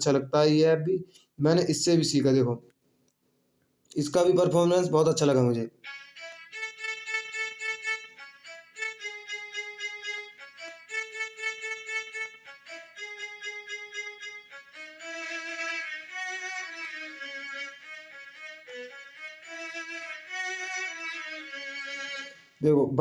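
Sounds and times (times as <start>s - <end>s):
synthesized violin melody: 5.8s - 22.7s.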